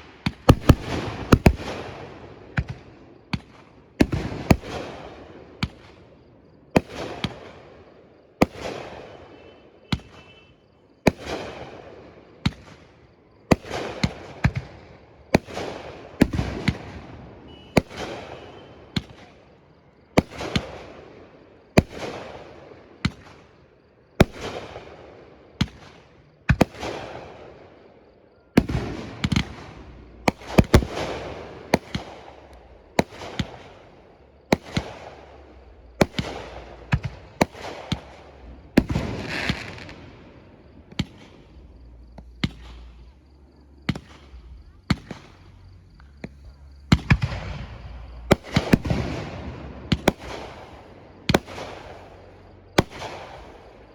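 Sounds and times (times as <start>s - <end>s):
fireworks bangs with rumble: 0.0s - 6.0s, 15.4s - 19.3s, 28.6s - 53.8s.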